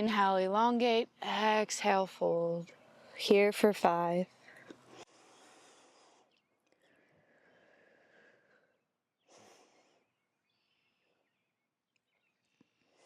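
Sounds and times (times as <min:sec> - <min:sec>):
person breathing faintly: 0:04.4 - 0:11.0.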